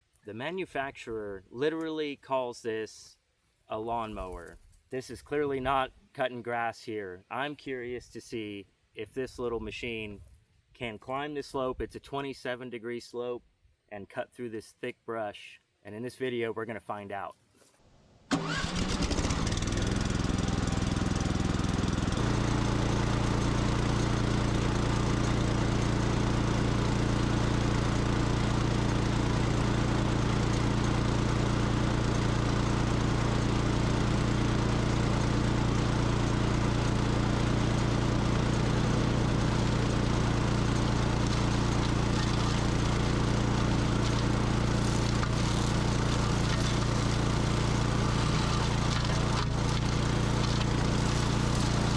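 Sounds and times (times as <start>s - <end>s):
mower engine running: 18.3s - 51.9s.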